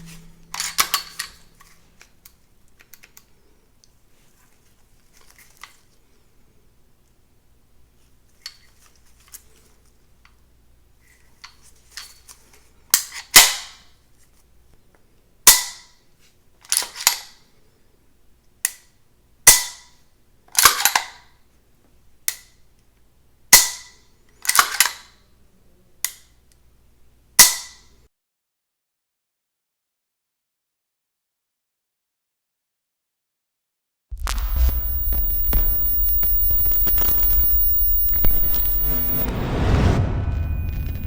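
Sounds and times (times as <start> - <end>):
faint clicks: 34.2 - 39.3.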